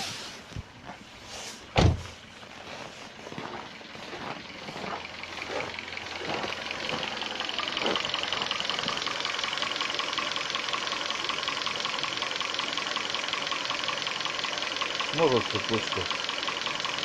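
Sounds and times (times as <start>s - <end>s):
engine running: 0.0s - 17.0s
fast metallic engine knocking: 4.4s - 17.0s.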